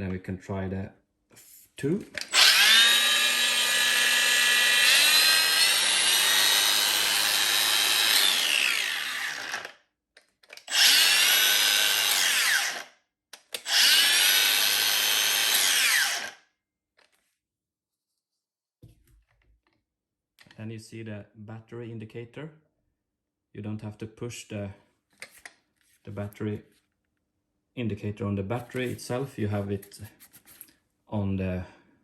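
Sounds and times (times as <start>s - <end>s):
angle grinder whine: 2.3s - 9.7s, 10.7s - 12.8s, 13.6s - 16.3s.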